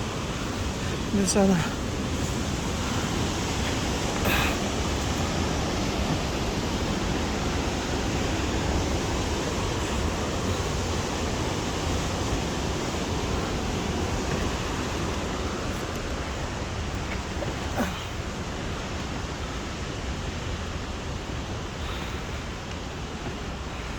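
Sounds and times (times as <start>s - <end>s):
rushing water of waterfall: 0.0s - 23.9s.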